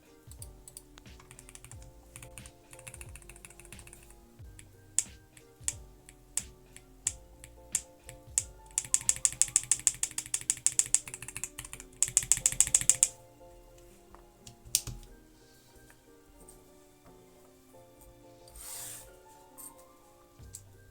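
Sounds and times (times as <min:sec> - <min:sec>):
background music: 0:00.0 - 0:20.9
mechanical keyboard keystrokes: 0:00.4 - 0:04.1, 0:07.8 - 0:13.1.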